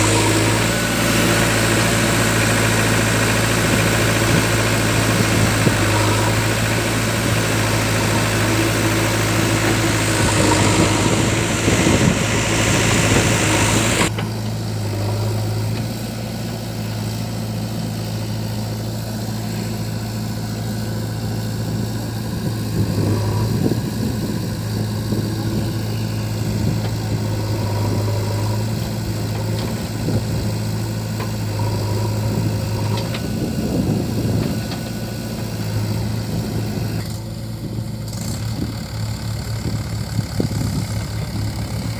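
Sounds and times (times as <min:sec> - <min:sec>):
diesel engine idling: 0:00.0 - 0:41.9.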